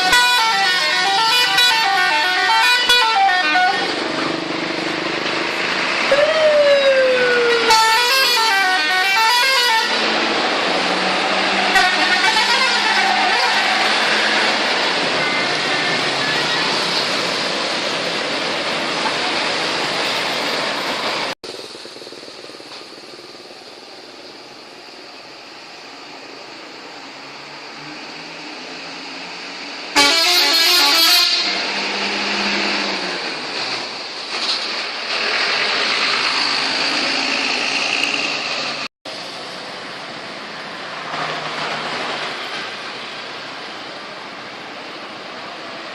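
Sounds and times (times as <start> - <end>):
bus passing: 0.0 - 45.9
road traffic rushing: 0.0 - 45.9
steady hum of vehicles: 0.0 - 45.9.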